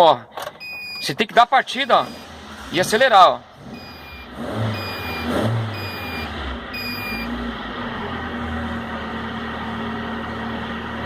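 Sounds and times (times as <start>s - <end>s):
short beeping tone: 0.6s - 1.0s, 3.8s - 7.4s
car engine revving and running: 1.6s - 11.0s.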